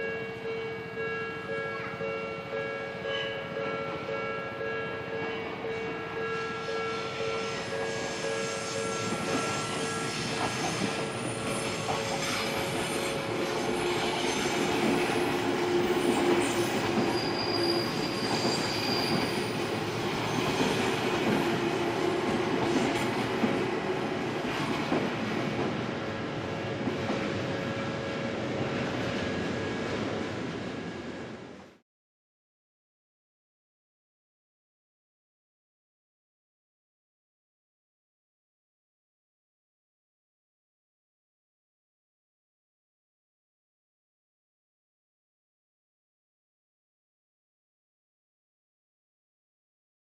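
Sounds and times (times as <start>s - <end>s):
level crossing warning bell: 0.0s - 10.2s
electric train passing: 0.4s - 31.8s.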